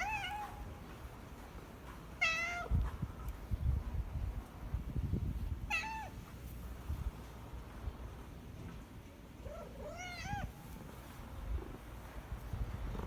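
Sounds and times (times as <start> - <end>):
cat meowing: 0.0 - 0.7, 2.2 - 2.8, 5.7 - 6.2, 9.5 - 10.6.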